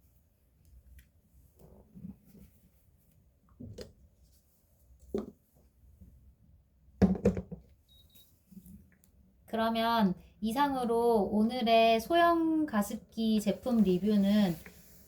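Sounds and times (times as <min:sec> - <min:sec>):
objects being set down knocking: 0:07.0 - 0:07.7.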